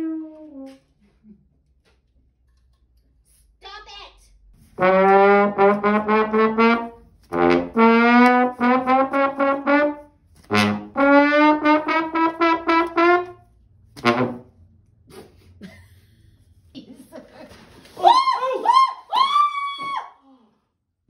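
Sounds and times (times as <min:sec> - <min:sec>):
brass instrument tonguing quick notes: 0:04.7 - 0:14.5.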